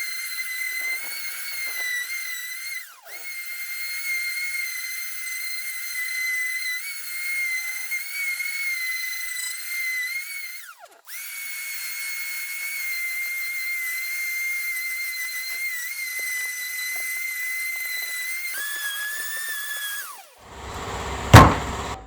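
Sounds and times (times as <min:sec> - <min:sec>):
orbital sander whining: 0:20.5 - 0:22.0.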